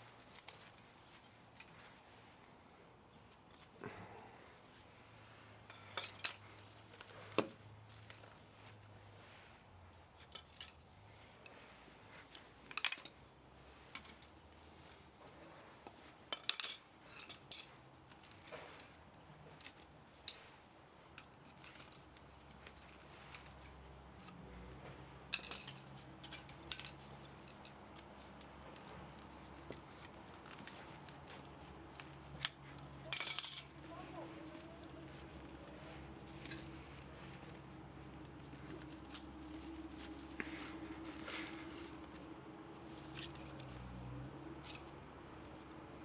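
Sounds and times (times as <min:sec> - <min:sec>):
hand tools clicking on metal: 0:25.3 - 0:45.0.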